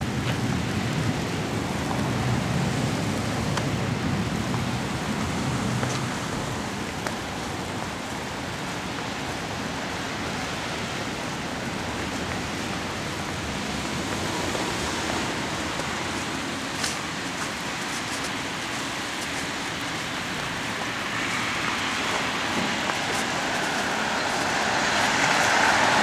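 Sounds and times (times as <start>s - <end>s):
wind rushing: 22.1s - 26.0s.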